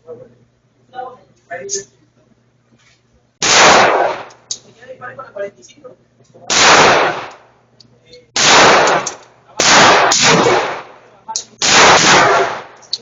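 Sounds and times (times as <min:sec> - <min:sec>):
gunshots with echo: 0:03.4 - 0:04.3, 0:06.5 - 0:07.4, 0:08.4 - 0:11.0, 0:11.6 - 0:12.8.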